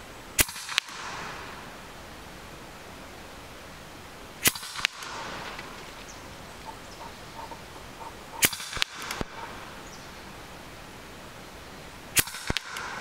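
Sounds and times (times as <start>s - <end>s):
air rifle shots: 0.4s - 1.8s, 4.4s - 6.0s, 7.0s - 9.8s, 12.1s - 13.0s.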